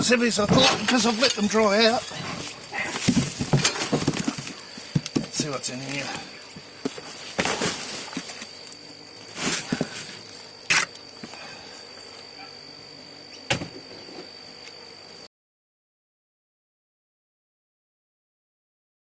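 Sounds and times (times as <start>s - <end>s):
rustling of dry material: 0.2s - 10.6s.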